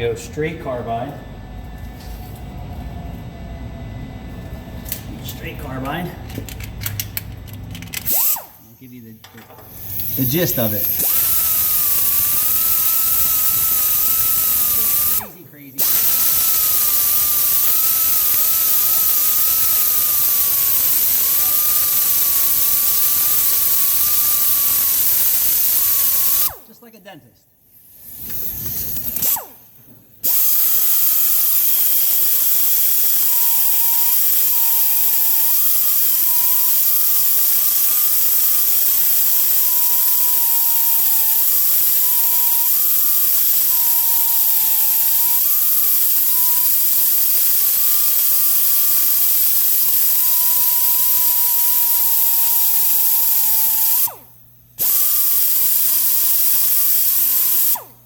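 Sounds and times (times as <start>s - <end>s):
rotary grinder cutting metal: 9.8s - 26.6s, 30.3s - 54.2s, 54.8s - 57.8s.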